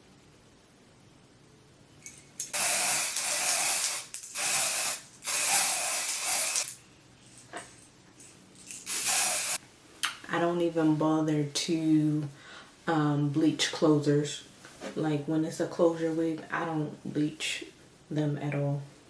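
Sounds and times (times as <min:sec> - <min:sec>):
hair spray hissing: 0:02.4 - 0:06.8, 0:08.8 - 0:09.6.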